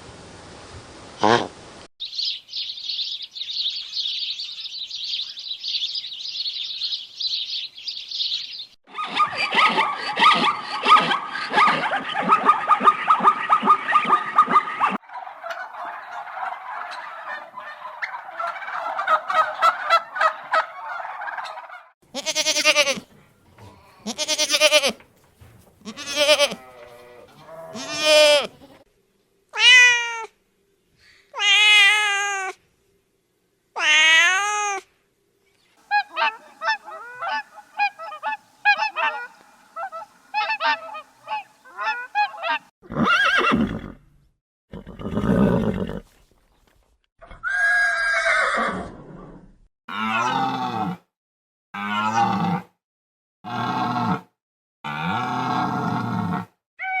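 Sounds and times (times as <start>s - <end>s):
farm animal calls: 2.1s - 28.8s, 35.8s - 43.8s, 49.9s - 51.0s, 51.8s - 52.7s, 54.9s - 57.0s.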